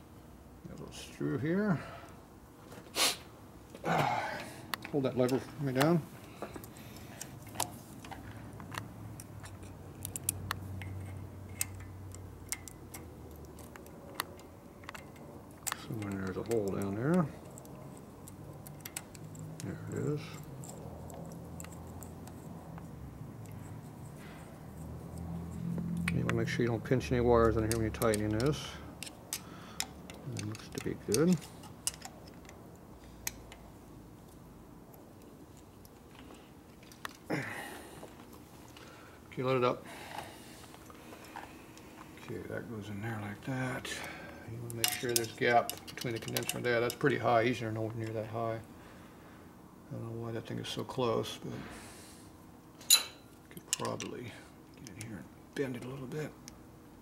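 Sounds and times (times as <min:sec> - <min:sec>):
hand tools clicking on metal: 0:06.6 - 0:23.6, 0:24.8 - 0:33.6, 0:43.9 - 0:47.2, 0:52.8 - 0:54.2
clicks of small hand tools: 0:27.4 - 0:32.6, 0:44.7 - 0:47.2, 0:52.8 - 0:54.2.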